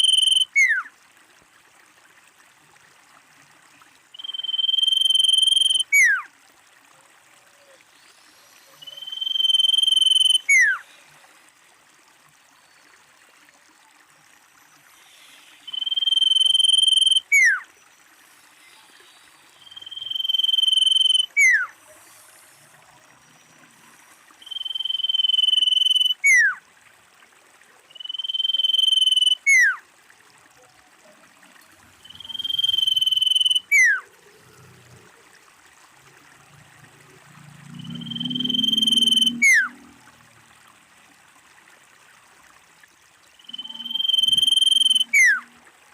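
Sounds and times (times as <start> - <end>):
bird calling whistled note: 0.0 - 0.9, 4.2 - 6.2, 8.8 - 10.8, 15.6 - 17.6, 19.6 - 21.7, 24.4 - 26.6, 27.9 - 29.8, 32.0 - 34.0, 38.0 - 39.8, 43.4 - 45.4.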